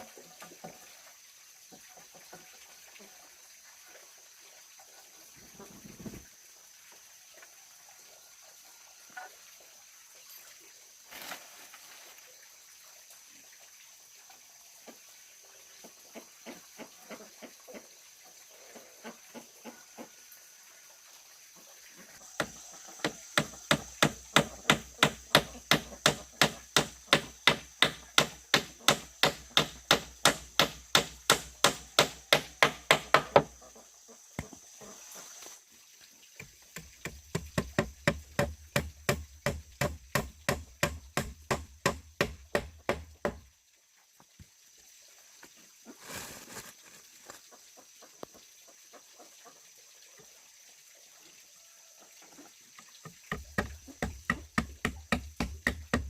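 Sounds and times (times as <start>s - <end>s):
tool striking wood: 22.4s - 33.6s, 36.8s - 43.5s, 53.3s - 56.0s.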